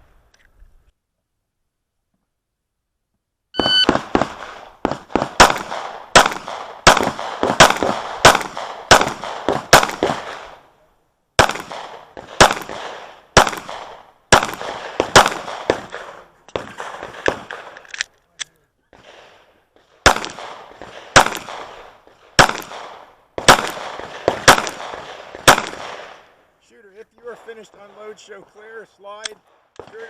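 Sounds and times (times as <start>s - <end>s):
shot timer beep: 3.6s - 3.9s
pistol shots: 3.6s - 10.6s, 11.4s - 17.9s, 19.0s - 26.3s, 29.8s - 30.0s.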